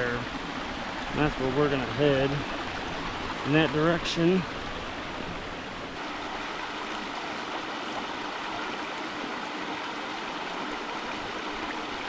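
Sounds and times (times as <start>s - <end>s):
creek water rushing: 0.0s - 12.0s.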